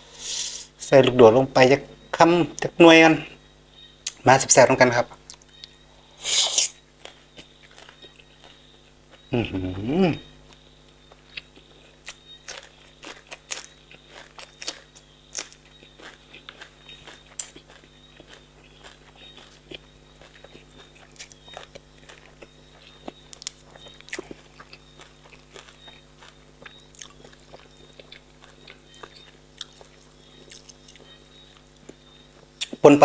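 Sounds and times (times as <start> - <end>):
person chewing crunchy food: 5.2 - 32.8
wet mouth clicks: 6.2 - 6.8.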